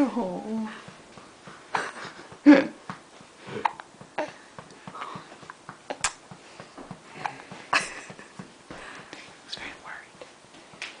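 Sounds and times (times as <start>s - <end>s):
baby hiccuping: 3.6s - 4.4s.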